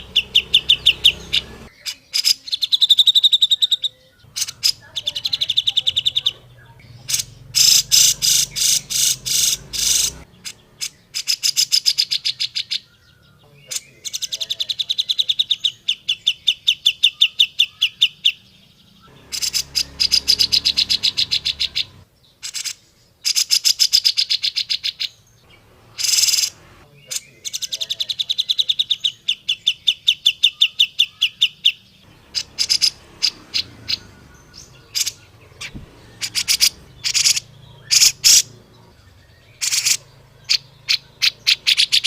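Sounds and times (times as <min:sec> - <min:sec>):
bird chattering calls: 0:00.0 - 0:42.0.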